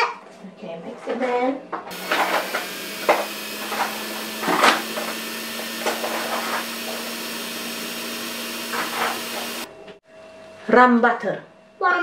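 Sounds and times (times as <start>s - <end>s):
electric hand mixer running: 1.9s - 9.7s
mixer clattering in bowl: 1.9s - 9.7s.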